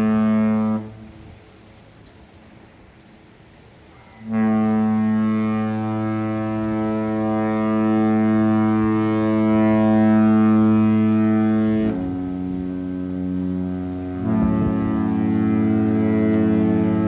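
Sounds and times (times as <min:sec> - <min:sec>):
ship's horn sounding: 0:00.0 - 0:01.7, 0:03.5 - 0:17.0.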